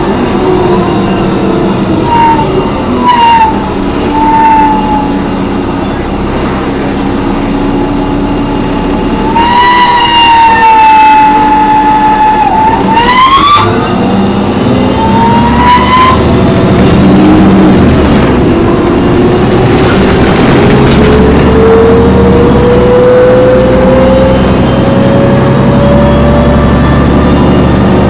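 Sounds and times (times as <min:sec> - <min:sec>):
bus running and road noise: 0:00.0 - 0:28.0
bus high-pitched screech: 0:00.1 - 0:17.5.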